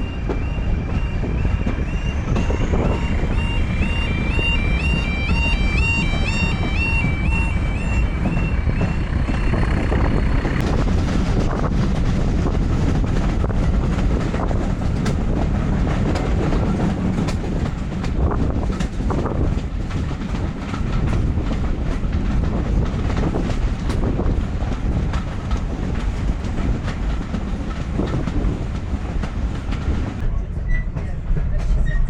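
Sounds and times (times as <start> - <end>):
train rumbling: 0.0 - 32.0
wheels clicking over rail joints: 4.8 - 30.2.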